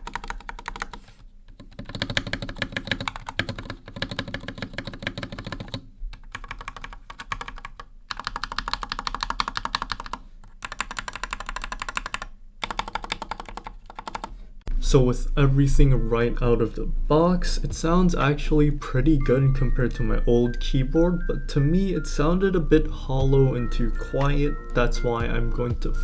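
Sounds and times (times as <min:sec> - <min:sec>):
rapid mechanical keyboard typing: 0:00.0 - 0:14.4.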